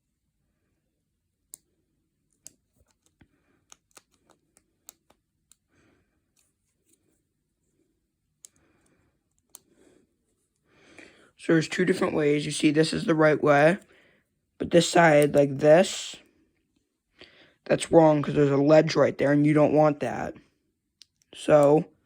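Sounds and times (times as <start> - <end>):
plastic parts clicking together: 2.3 - 5.6.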